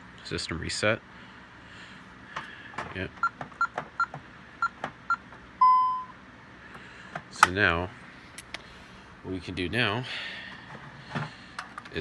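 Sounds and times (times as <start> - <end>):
alarm keypad beeping: 3.6 - 6.1.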